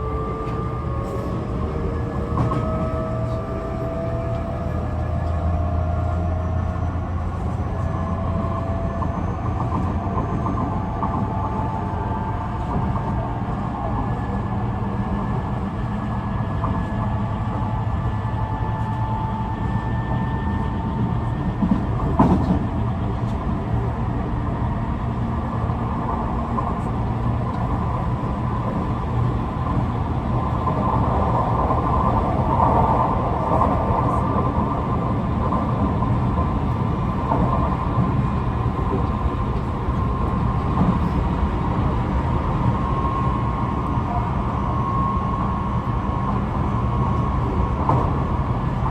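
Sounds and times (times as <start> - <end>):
train clunk: 0.0 - 3.4, 19.9 - 23.9
train wheels rumbling on rail: 0.0 - 48.9.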